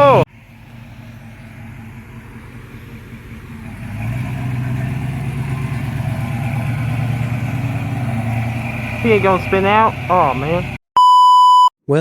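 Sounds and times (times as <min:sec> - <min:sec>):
car engine running: 0:00.0 - 0:10.8.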